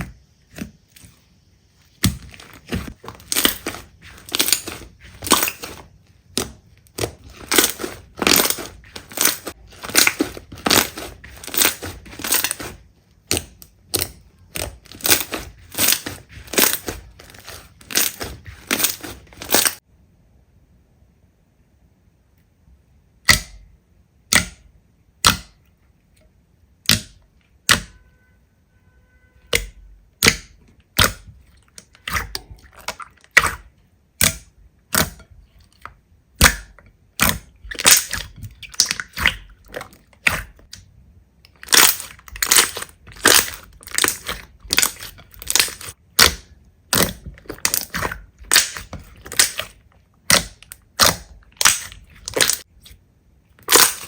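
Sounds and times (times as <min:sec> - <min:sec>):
slime squeezed with crackling pops: 0:36.4 - 0:40.7, 0:41.6 - 0:52.8, 0:53.6 - 0:54.0.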